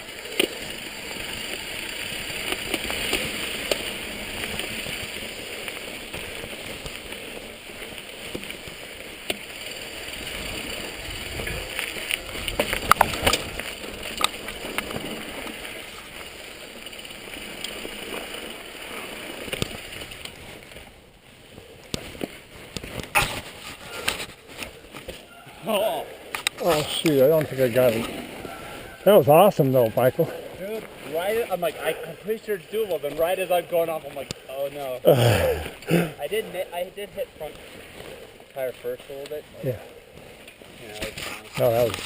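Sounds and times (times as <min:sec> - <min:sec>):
bike knocking and rattling: 0:00.0 - 0:25.3
bike tyres rolling on dirt: 0:00.0 - 0:42.0.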